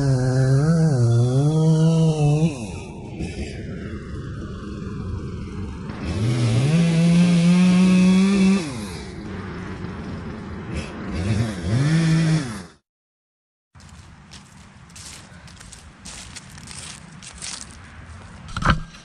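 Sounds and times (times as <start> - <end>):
chainsaw idling and revving: 0.0 - 2.8, 5.9 - 9.2, 10.8 - 12.8.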